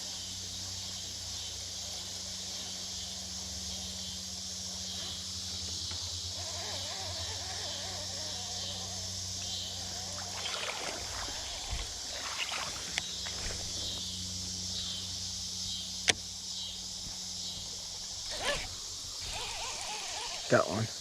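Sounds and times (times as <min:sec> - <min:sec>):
high outdoor hiss: 0:00.0 - 0:21.0
water splashing around legs: 0:10.1 - 0:14.1.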